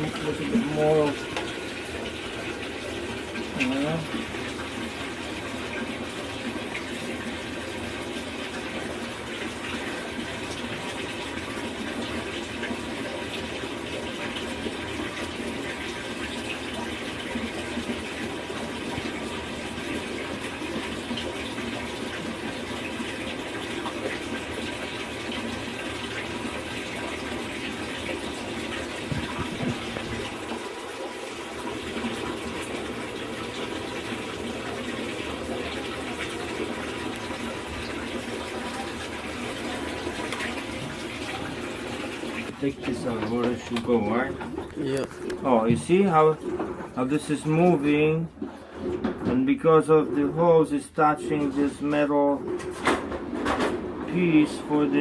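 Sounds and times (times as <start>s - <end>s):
water filling washing machine: 0.0s - 55.0s.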